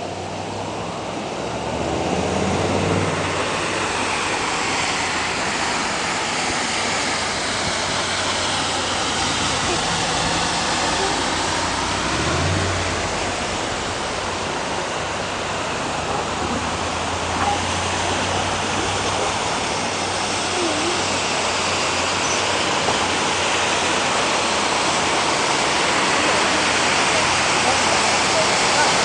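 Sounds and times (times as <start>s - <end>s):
water rushing on flooded street: 0.0s - 29.0s.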